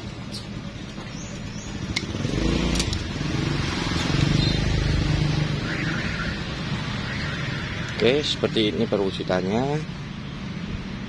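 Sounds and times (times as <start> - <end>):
two-stroke motorcycle engine revving: 0.0 - 5.7.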